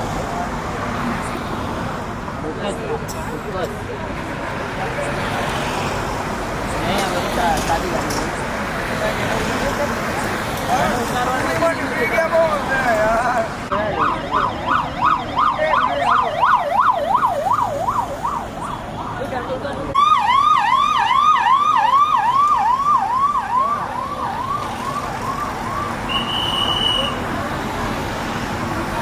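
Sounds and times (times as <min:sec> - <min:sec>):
traffic: 0:00.0 - 0:29.0
sweeping siren: 0:13.7 - 0:19.3, 0:20.0 - 0:27.1
yelping siren: 0:13.7 - 0:19.3, 0:20.0 - 0:27.2.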